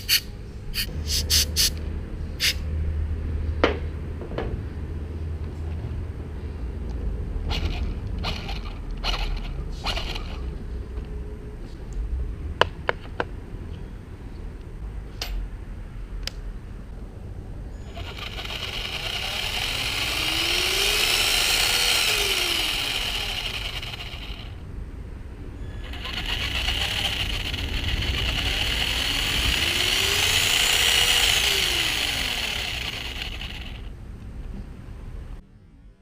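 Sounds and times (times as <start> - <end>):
electric motor whine: 17.9 - 24.6, 25.8 - 33.9.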